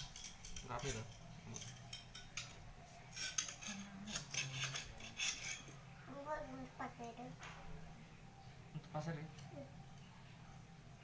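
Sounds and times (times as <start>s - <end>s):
metallic clicking and scraping: 0.0s - 5.8s.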